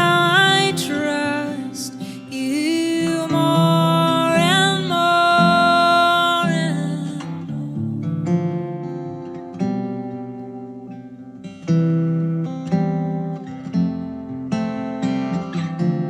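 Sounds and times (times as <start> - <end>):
woman singing: 0.0 - 8.3
strummed acoustic guitar: 0.0 - 16.0.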